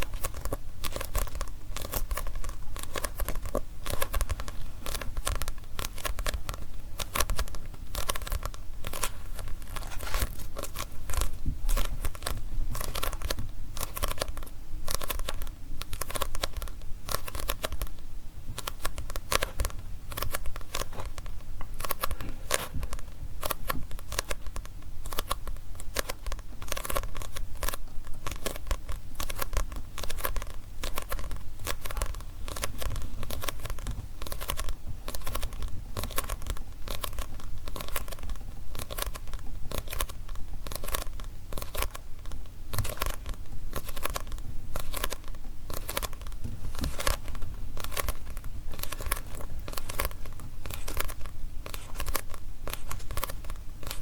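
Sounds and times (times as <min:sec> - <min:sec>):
fingernails tapping on book pages: 0:18.6 - 0:54.0.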